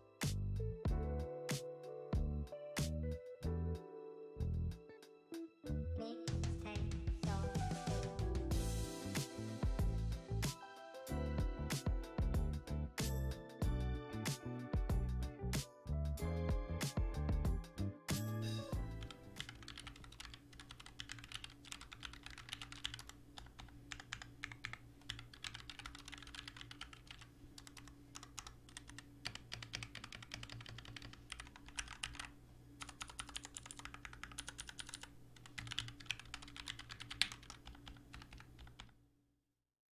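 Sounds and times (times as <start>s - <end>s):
mechanical keyboard typing: 19.0s - 39.0s.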